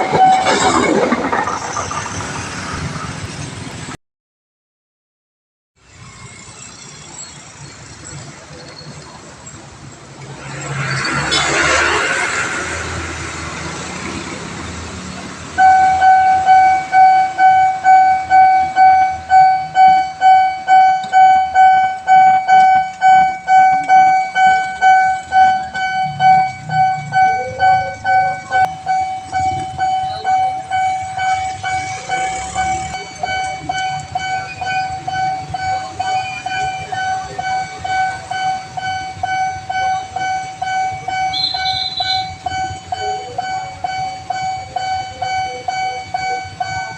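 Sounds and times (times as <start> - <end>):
level crossing alarm pulsing tone: 0.0 - 1.6, 15.5 - 46.9
broad rushing noise: 7.5 - 19.1.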